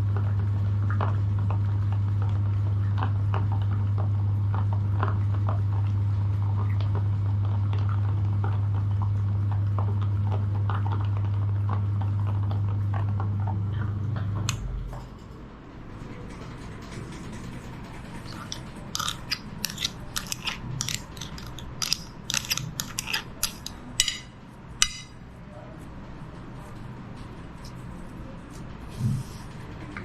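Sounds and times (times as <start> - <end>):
meat grinder motor hum: 18.2 - 24.0.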